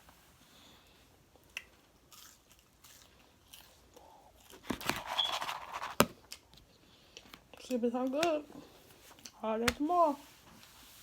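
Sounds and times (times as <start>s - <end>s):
crunching and chewing food: 1.3s - 4.8s.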